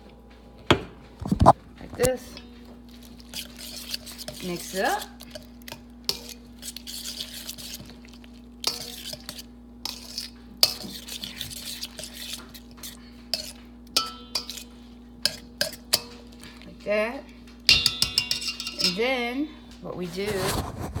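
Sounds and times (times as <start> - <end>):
utensil clinking against bowl: 2.0 - 8.0, 8.6 - 19.3
utensil scraping a bowl: 2.4 - 16.7, 17.7 - 19.1, 20.1 - 21.0.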